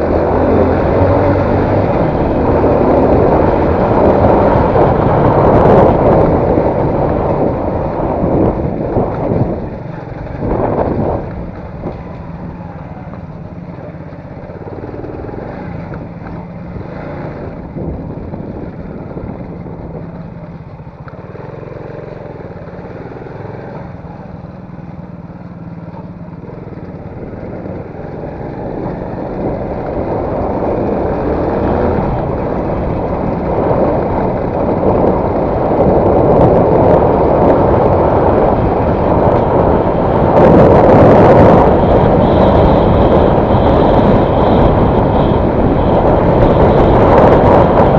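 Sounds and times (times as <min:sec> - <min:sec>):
vehicle engine and road noise: 0:00.0 - 0:47.9.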